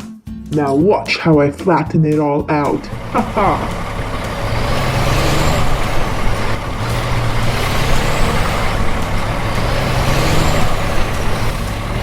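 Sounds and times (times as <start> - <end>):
heavy truck engine running: 2.6 - 12.0.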